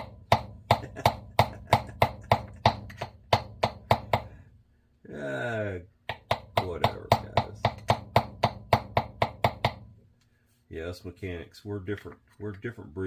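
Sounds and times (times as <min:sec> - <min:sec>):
hammer tapping on metal: 0:00.0 - 0:04.4, 0:06.1 - 0:09.9.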